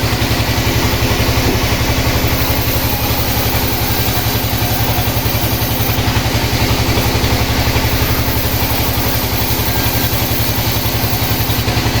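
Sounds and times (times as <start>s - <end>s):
sawmill engine running: 0.0s - 12.0s.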